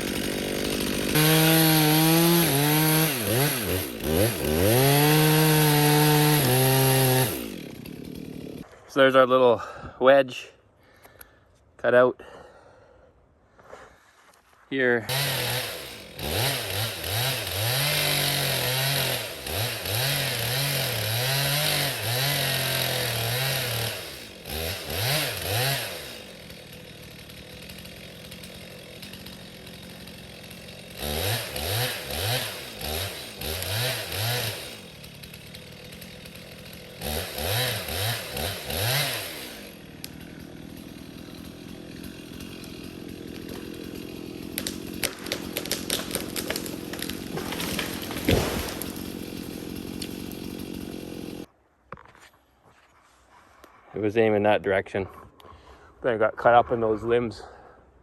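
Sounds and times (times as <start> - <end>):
chainsaw cutting at full throttle: 0.0 - 8.7, 15.1 - 51.5
chainsaw idling: 0.0 - 8.7, 15.1 - 51.5.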